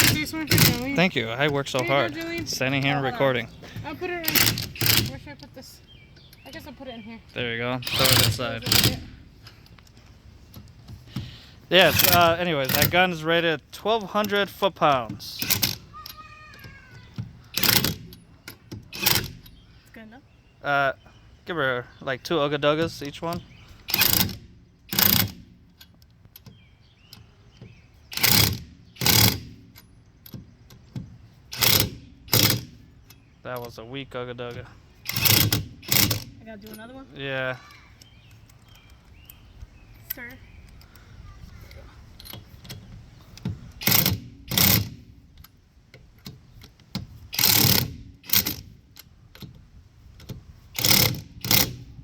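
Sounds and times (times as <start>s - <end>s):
impact wrench hammering: 0.0s - 1.1s, 35.1s - 36.3s
impact wrench hammering lug nuts: 0.0s - 2.6s, 3.8s - 5.3s, 7.8s - 9.2s, 10.6s - 13.2s, 14.1s - 16.0s, 16.6s - 19.4s, 22.7s - 25.6s, 27.6s - 32.8s, 35.0s - 36.5s, 42.4s - 45.1s, 46.2s - 48.8s, 50.2s - 51.9s.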